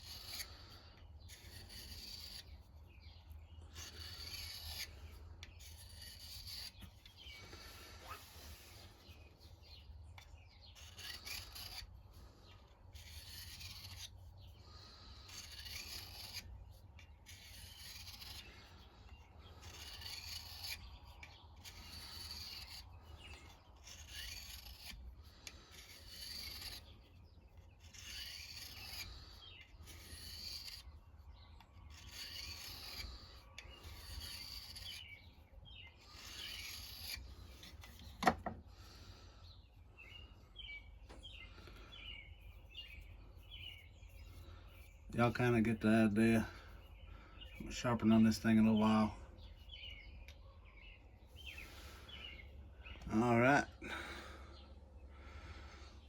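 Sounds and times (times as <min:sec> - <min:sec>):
knife scraping on sharpener: 0:00.0 - 0:39.2.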